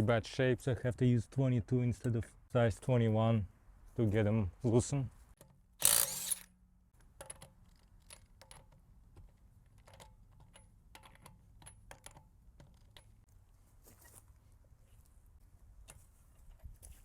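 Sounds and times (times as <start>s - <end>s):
socket wrench burst: 5.8s - 6.6s.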